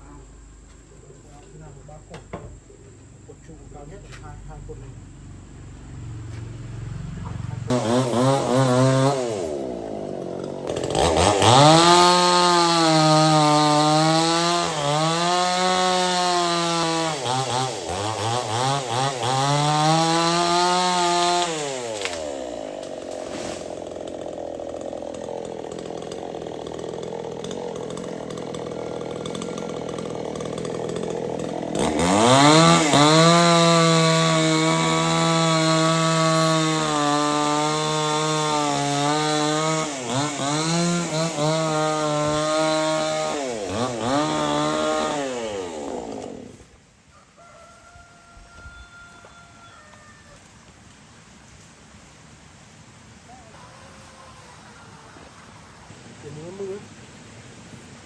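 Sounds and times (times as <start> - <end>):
chainsaw revving and idling: 3.7 - 46.9, 55.4 - 57.2.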